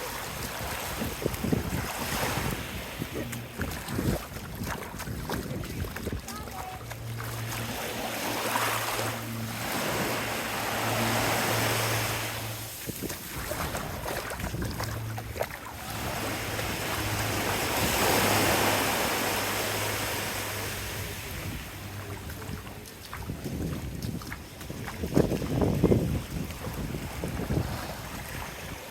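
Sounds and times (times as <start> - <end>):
small waves washing on beach: 0.0 - 28.9.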